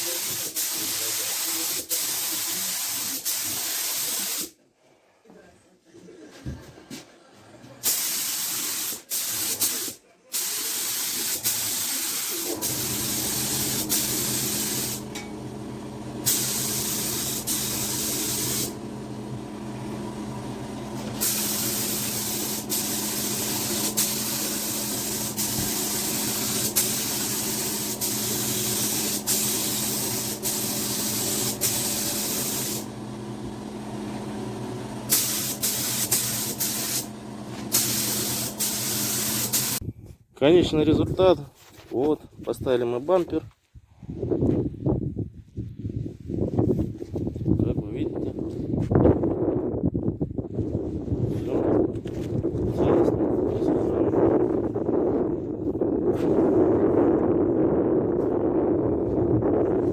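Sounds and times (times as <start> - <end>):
spray paint hissing: 0.0 - 4.5, 7.8 - 15.2, 16.2 - 18.9, 20.9 - 33.0, 35.0 - 39.8
machine hum: 12.5 - 39.8.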